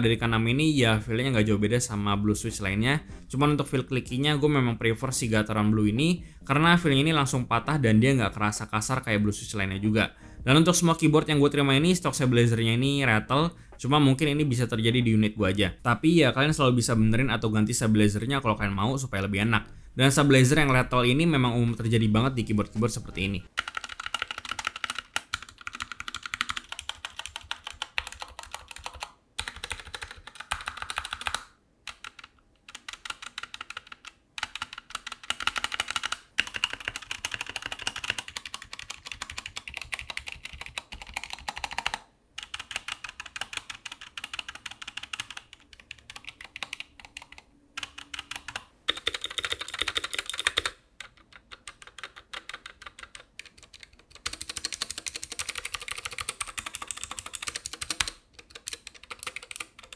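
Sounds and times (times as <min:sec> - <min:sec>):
mechanical keyboard typing: 0:23.6 - 0:59.9.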